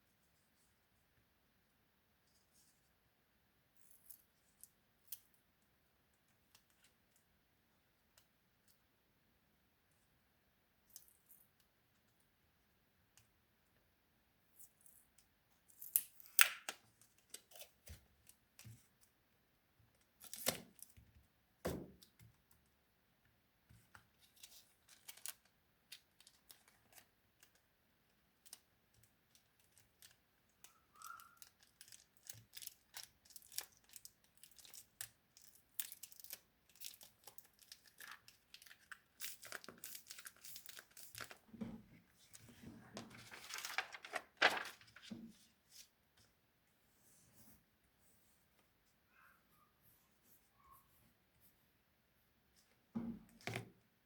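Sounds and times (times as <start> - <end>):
material crinkling and tearing: 29.4 - 41.4, 43.1 - 45.1.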